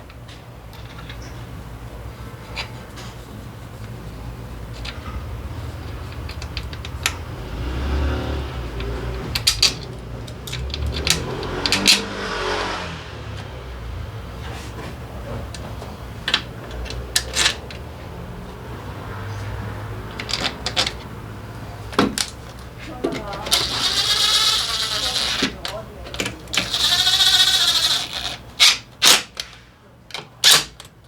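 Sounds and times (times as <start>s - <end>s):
metal parts clicking and knocking: 4.7s - 7.3s, 8.8s - 12.1s, 15.5s - 17.8s, 20.1s - 21.1s, 21.9s - 31.0s
scraping and rustling: 19.1s - 28.9s.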